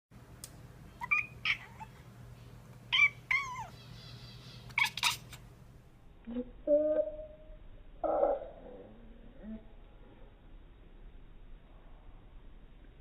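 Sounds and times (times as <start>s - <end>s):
cat chirping: 1.0s - 2.0s, 2.9s - 5.4s.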